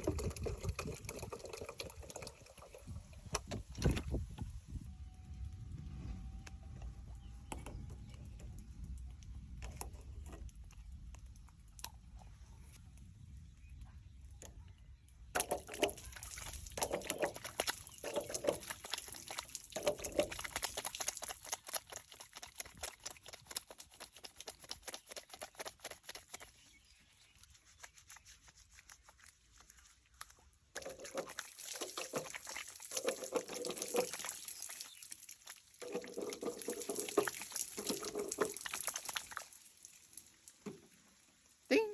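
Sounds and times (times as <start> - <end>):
water pouring and trickling: 0.0 - 4.8, 15.2 - 41.8
low rumble: 4.0 - 11.6.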